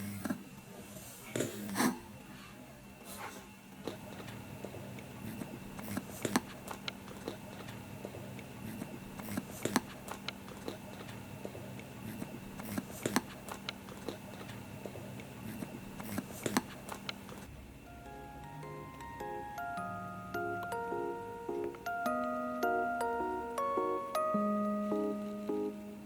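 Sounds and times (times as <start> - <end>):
rabbit clicking: 15.2 - 17.5.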